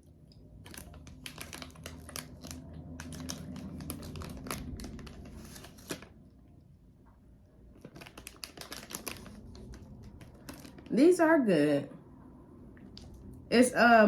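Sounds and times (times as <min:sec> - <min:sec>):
plastic snack bag crinkling: 0:00.4 - 0:06.2, 0:07.7 - 0:10.9.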